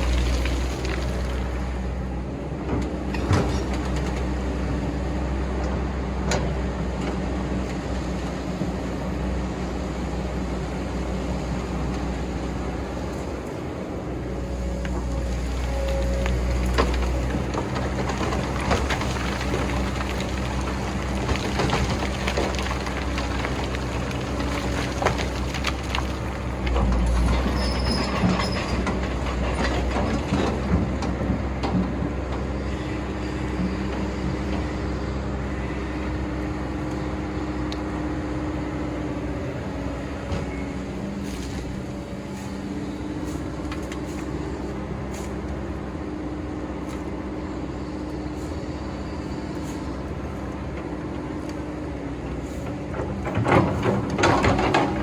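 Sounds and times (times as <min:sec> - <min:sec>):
excavator diesel engine: 0:00.0 - 0:55.0.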